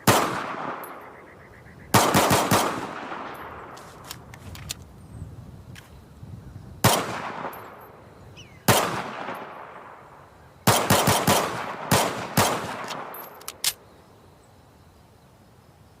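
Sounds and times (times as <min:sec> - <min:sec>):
pistol shots with echo: 0:00.0 - 0:01.2, 0:01.9 - 0:03.8, 0:06.8 - 0:08.0, 0:08.6 - 0:10.0, 0:10.6 - 0:13.8
sharp clicks: 0:03.7 - 0:04.9, 0:12.8 - 0:13.8.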